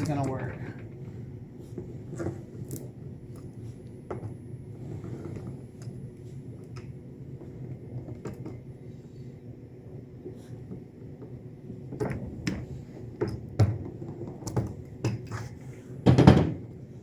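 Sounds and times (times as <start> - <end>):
hand roller rumbling: 0.0 - 9.0.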